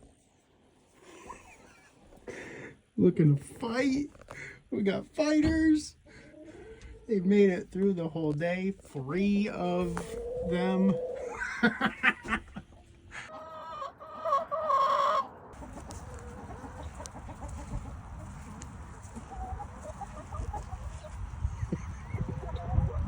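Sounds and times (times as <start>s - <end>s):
chicken squawking: 6.1s - 7.0s, 9.8s - 23.0s
steady low rumble: 15.6s - 23.0s.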